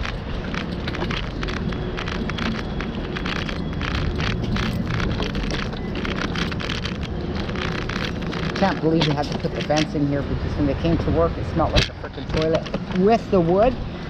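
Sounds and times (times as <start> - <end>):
raindrops tapping on microphone: 0.0 - 14.0
steady low rumble: 0.0 - 14.0.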